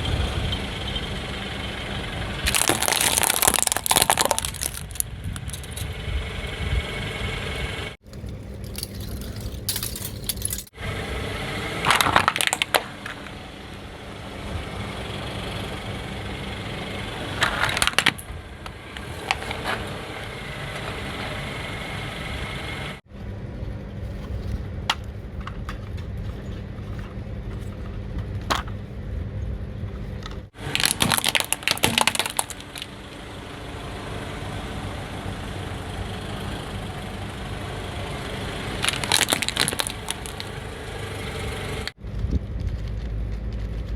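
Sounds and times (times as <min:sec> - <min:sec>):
car engine idling: 0:00.0 - 0:42.0
tyre crushing brittle objects: 0:02.5 - 0:05.9, 0:11.9 - 0:13.3, 0:17.3 - 0:18.2, 0:30.5 - 0:33.1, 0:38.7 - 0:40.6.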